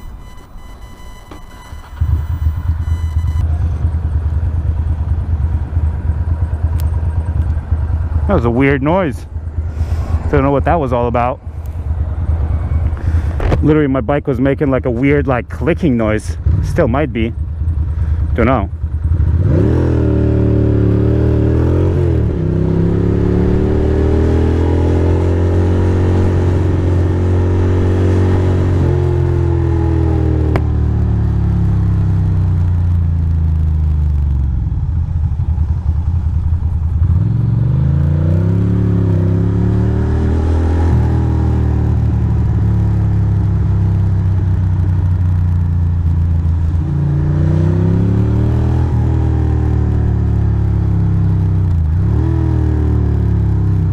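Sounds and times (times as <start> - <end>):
motorcycle engine revving: 16.3 - 53.9.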